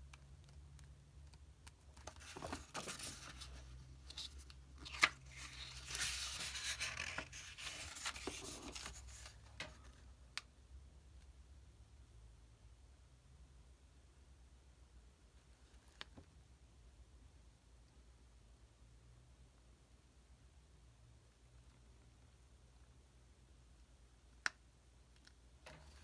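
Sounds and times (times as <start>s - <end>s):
pages rustling: 2.0s - 9.4s.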